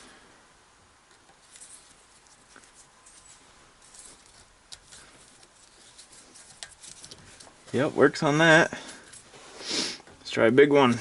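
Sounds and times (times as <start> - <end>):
pliers clicking and scraping: 1.1 - 7.6.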